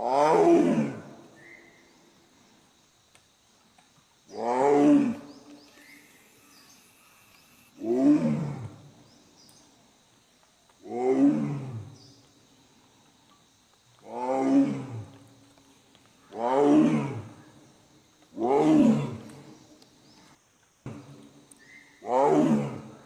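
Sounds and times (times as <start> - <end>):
tiger roaring: 0.0 - 1.1, 7.8 - 8.8, 10.8 - 11.8, 14.0 - 15.1, 16.4 - 17.3, 22.0 - 22.9.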